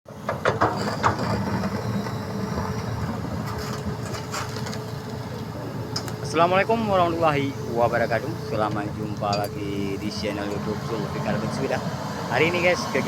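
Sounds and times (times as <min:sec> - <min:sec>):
excavator engine rumble: 0:00.1 - 0:13.0
sharp knocks and clanks: 0:00.2 - 0:02.8
faint steady whine: 0:01.0 - 0:13.0.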